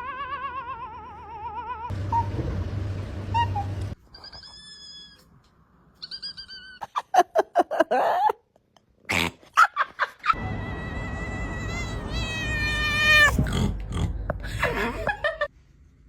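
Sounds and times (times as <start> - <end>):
cats meowing: 10.4 - 13.4.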